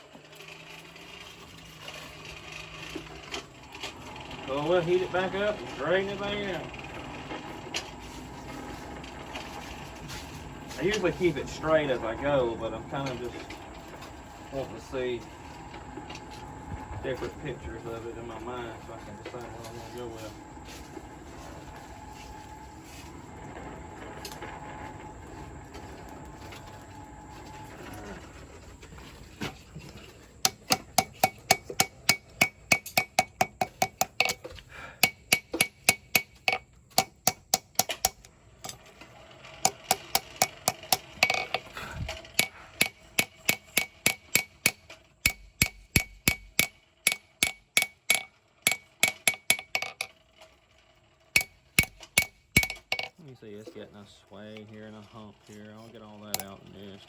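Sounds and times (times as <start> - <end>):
hammer striking blade on anvil: 30.4 - 34.4, 35.0 - 38.3, 42.4 - 50.1, 51.4 - 53.1.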